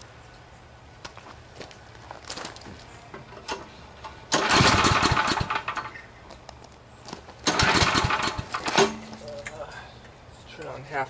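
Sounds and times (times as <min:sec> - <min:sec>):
generator engine turning over: 0:04.3 - 0:06.0, 0:07.4 - 0:09.0.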